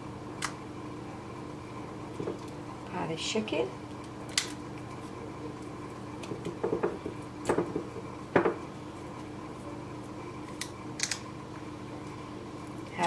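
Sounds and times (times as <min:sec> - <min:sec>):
cardamom pods cracking by hand: 0:04.0 - 0:07.9, 0:10.4 - 0:11.3.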